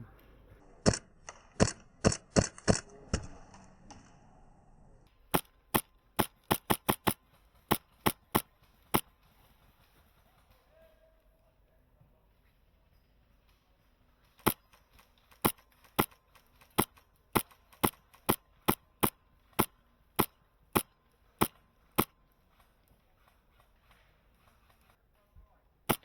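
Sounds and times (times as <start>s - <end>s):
airsoft rifle shots: 0.8s - 3.4s, 5.3s - 9.2s, 14.4s - 24.0s.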